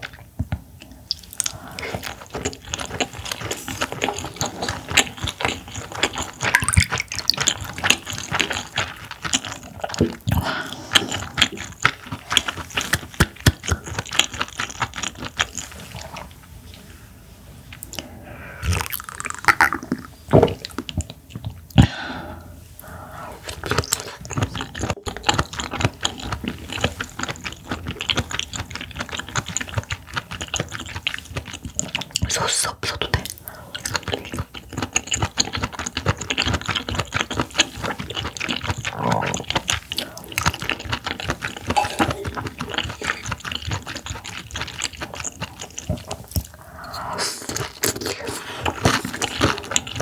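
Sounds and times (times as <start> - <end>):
wet chewing mouth clicks: 0.0 - 16.4, 17.8 - 21.8, 22.8 - 50.0.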